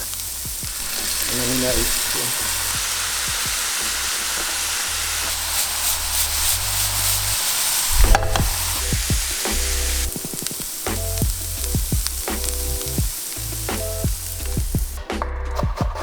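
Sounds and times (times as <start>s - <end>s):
background music with bass line: 0.0s - 5.4s, 7.9s - 16.0s
food sizzling in a hot pan: 0.0s - 15.1s.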